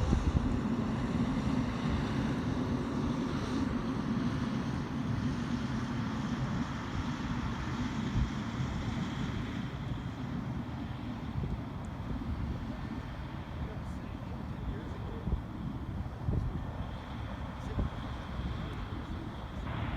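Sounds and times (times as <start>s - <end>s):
wind on microphone: 0.0s - 2.3s, 14.7s - 19.9s
jet engines running: 0.0s - 19.9s.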